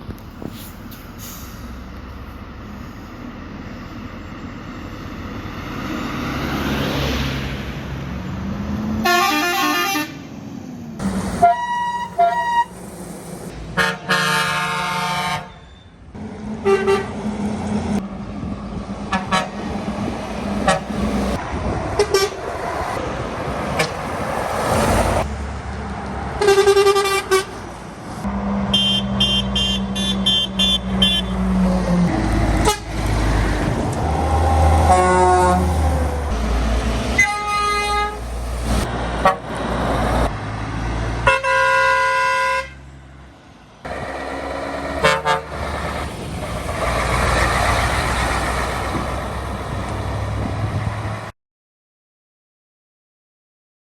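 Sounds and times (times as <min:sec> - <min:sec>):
engine and traffic rumble: 0:00.0 - 0:51.4
truck horn blasts: 0:09.0 - 0:10.2, 0:11.3 - 0:12.8, 0:13.7 - 0:15.9, 0:16.6 - 0:17.2, 0:19.1 - 0:19.7, 0:20.6 - 0:21.0, 0:22.0 - 0:22.5, 0:23.8 - 0:24.1, 0:26.4 - 0:27.6, 0:28.7 - 0:31.5, 0:32.6 - 0:33.0, 0:34.7 - 0:35.9, 0:37.1 - 0:38.3, 0:39.2 - 0:39.6, 0:41.2 - 0:42.8, 0:45.0 - 0:45.7.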